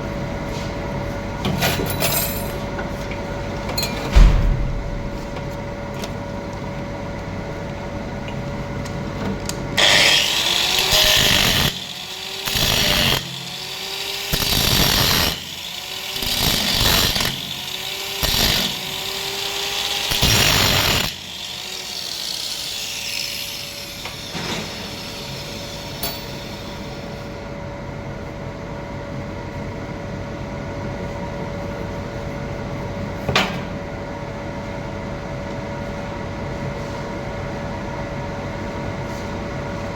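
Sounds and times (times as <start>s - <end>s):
steady hum: 3.2s - 8.8s
angle grinder grinding metal: 9.8s - 27.2s.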